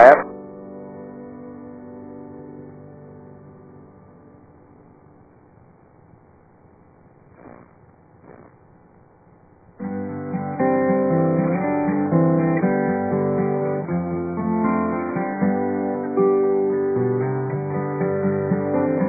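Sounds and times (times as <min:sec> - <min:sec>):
faint low hum: 0:03.2 - 0:10.2
guitar music: 0:09.8 - 0:19.0.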